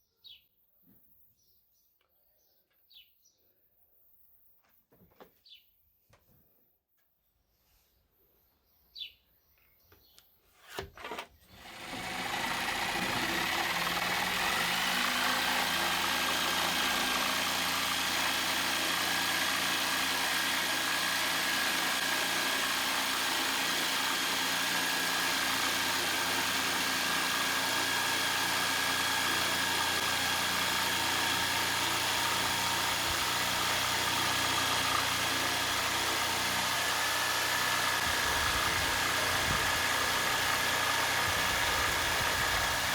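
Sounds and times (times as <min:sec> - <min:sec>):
electric jigsaw buzzing: 0:10.6 - 0:42.9.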